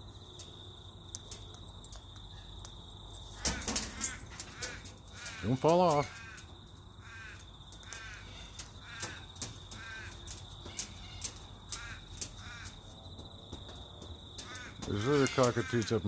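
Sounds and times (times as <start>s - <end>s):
sharp ticks: 14.4s - 16.0s.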